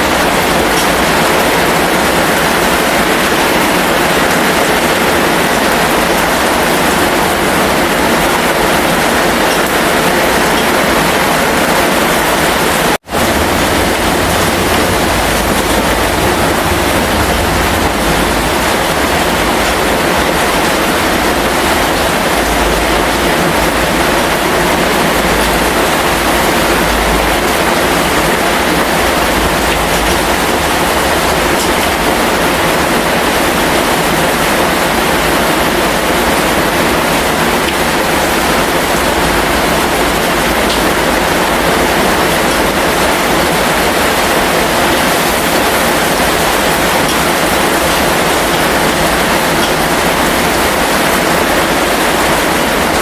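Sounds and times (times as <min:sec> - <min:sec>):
heavy rain: 0:00.0 - 0:53.0.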